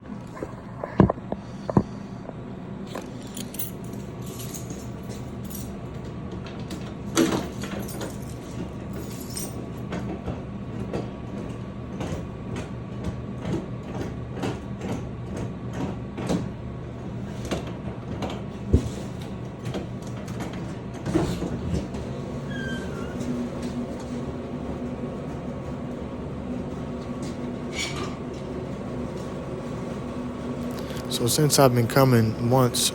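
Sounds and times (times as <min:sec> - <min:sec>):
electrical hum: 0:00.0 - 0:08.4, 0:16.6 - 0:32.9.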